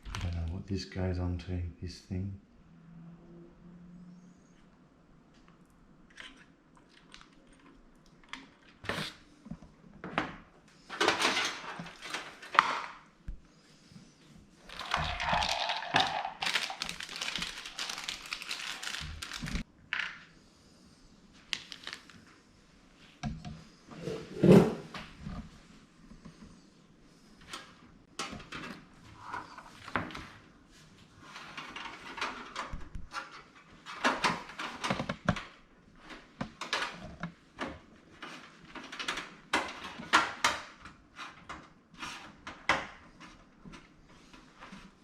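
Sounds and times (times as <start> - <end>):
plastic packaging crinkling: 14.6 - 19.6, 21.6 - 22.2.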